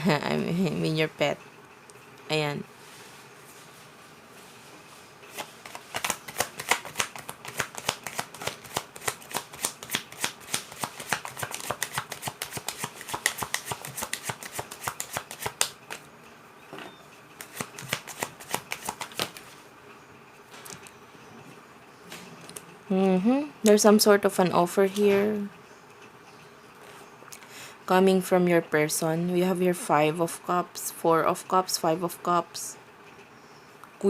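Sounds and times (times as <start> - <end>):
cards being shuffled: 5.3 - 16.1, 17.4 - 19.6.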